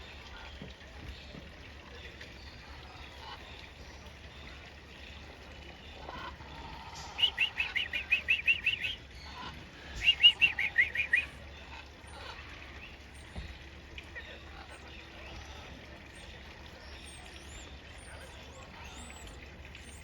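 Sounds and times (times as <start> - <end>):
bird chirping rapidly: 7.2 - 9.0, 10.0 - 11.4.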